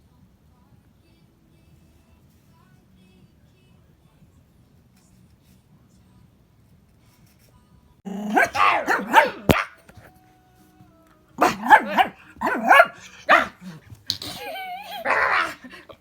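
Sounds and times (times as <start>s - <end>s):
dog barking excitedly: 8.1s - 10.0s, 11.4s - 16.0s
dog whining: 8.1s - 10.1s, 11.4s - 16.0s.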